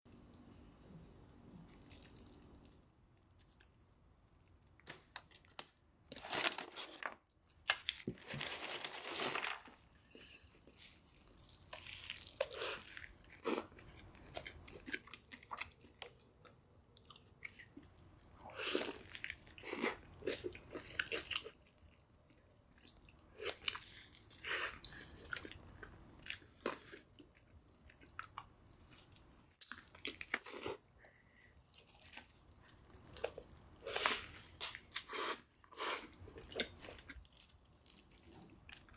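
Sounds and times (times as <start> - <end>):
person chewing crunchy food: 10.1 - 22.0, 22.8 - 30.8, 31.7 - 38.9.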